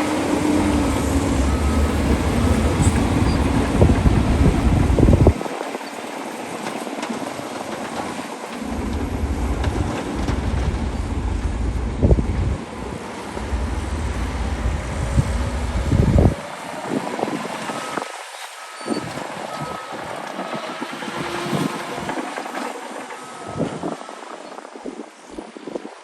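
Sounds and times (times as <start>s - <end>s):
wind on microphone: 0.0s - 5.9s, 8.6s - 18.1s, 18.8s - 22.7s, 23.3s - 26.0s
heavy machinery rumbling: 0.0s - 25.2s
reverse alarm beeping: 0.1s - 5.4s, 23.0s - 24.4s.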